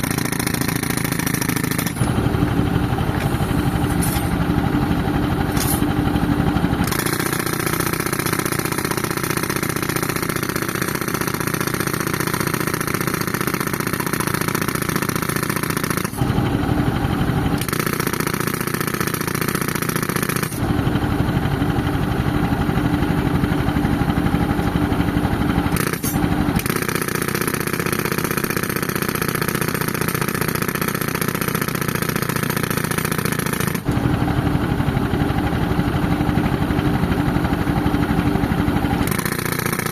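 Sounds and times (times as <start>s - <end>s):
air compressor engine drone: 0.0s - 39.9s
pneumatic breaker hammering concrete: 0.0s - 39.9s.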